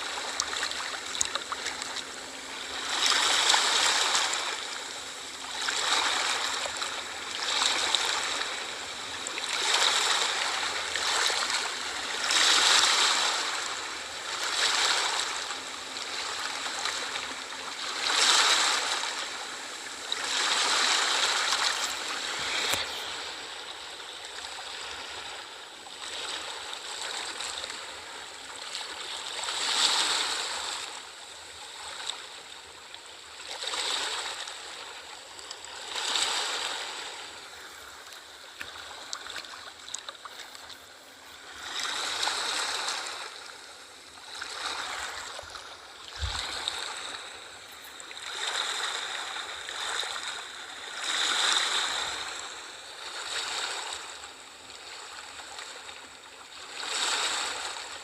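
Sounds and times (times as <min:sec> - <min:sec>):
ocean waves washing onto shore: 0:00.0 - 0:31.1, 0:33.4 - 0:58.0.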